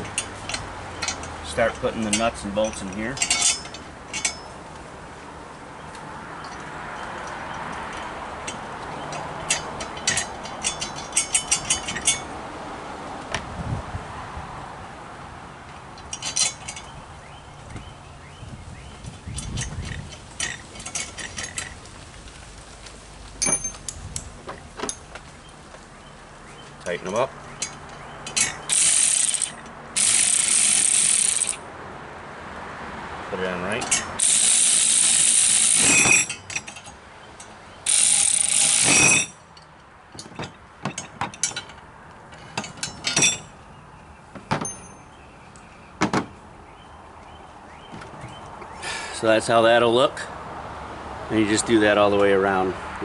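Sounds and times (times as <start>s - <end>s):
metal parts clinking: 0.0s - 4.6s, 6.4s - 12.3s, 16.0s - 17.0s, 19.3s - 21.8s, 23.4s - 25.2s, 26.8s - 31.6s, 33.7s - 43.5s
ratchet wrench clicking: 27.6s - 31.6s, 33.8s - 39.3s.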